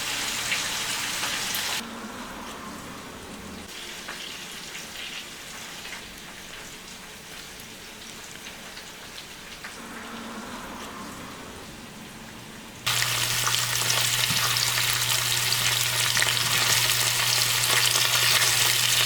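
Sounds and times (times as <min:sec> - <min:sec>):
food sizzling in a pan: 0:00.0 - 0:01.8, 0:03.7 - 0:09.3, 0:12.9 - 0:19.0.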